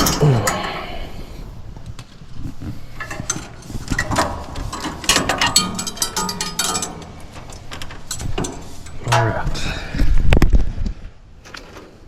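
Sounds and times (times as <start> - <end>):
hands rattling loose parts: 0.0 - 0.9, 1.8 - 9.6.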